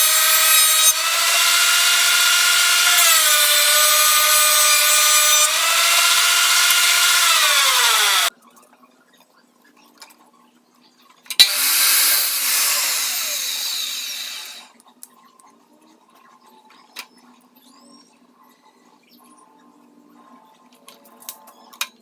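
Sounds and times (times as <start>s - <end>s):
power tool cutting wood: 0.0s - 8.3s, 11.4s - 14.7s.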